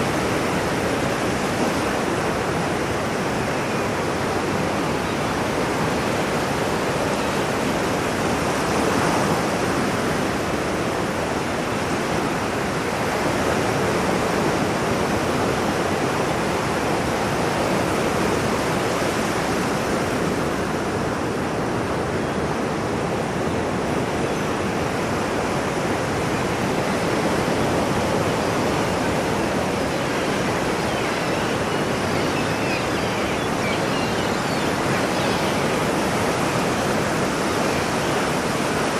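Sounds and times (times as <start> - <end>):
ocean waves breaking on shore: 0.0 - 38.9.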